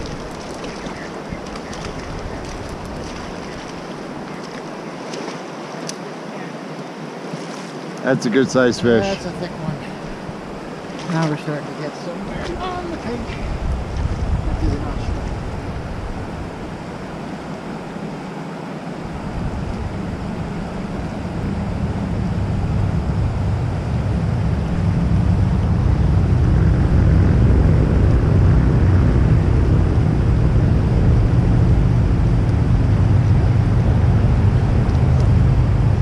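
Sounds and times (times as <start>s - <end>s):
rushing river whitewater: 0.0s - 13.8s.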